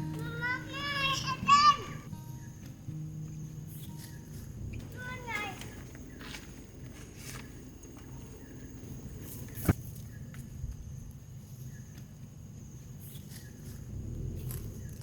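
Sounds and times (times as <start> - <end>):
low rumble: 4.3 - 7.2, 13.7 - 15.0.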